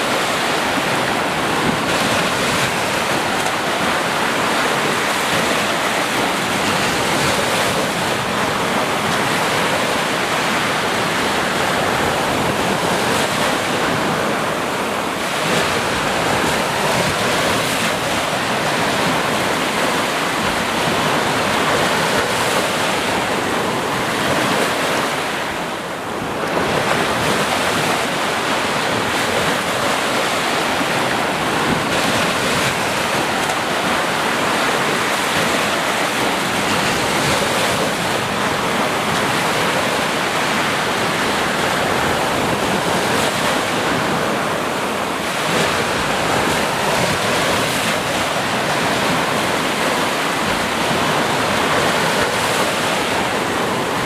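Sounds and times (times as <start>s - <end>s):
waves breaking and washing: 0.0s - 54.0s.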